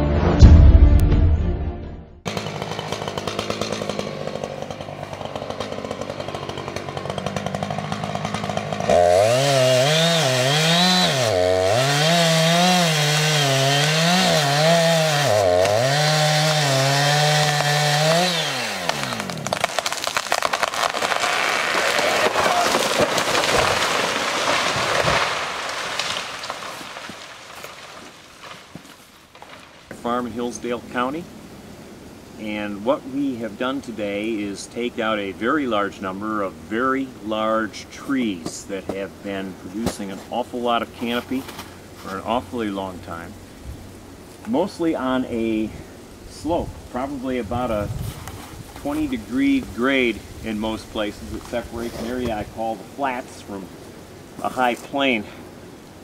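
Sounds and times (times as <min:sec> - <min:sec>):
chainsaw cutting tree: 0:02.3 - 0:29.5.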